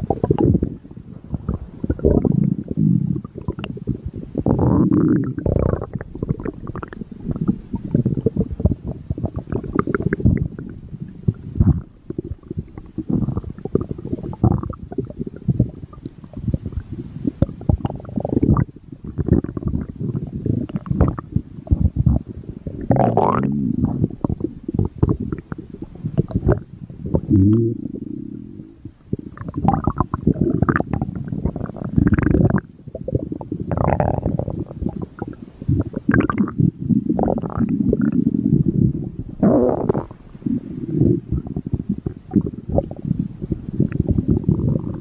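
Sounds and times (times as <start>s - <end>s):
stomach growling: 0.0s - 45.0s.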